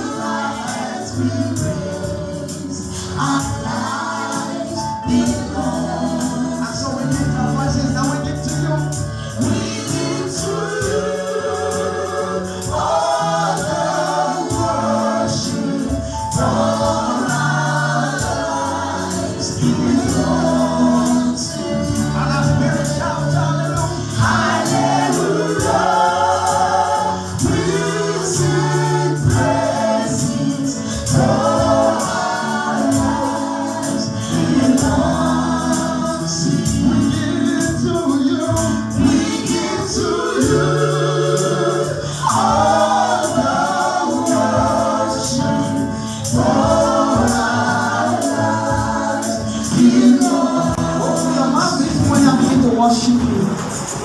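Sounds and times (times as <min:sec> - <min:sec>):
choir singing gospel with band: 0:00.0 - 0:54.0.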